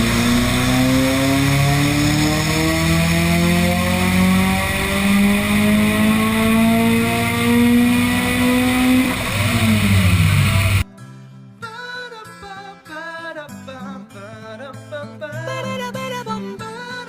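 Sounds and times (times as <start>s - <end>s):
turbocharged car engine revving: 0.0s - 10.8s.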